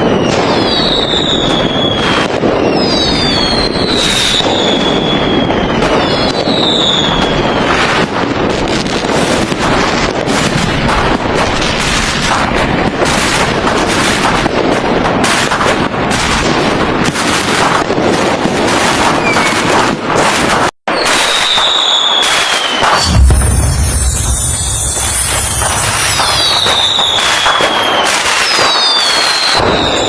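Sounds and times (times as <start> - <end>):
falling firework whistle: 0.0 - 8.0, 19.0 - 19.8, 20.9 - 30.0
fireworks bangs and crackling: 0.0 - 30.0.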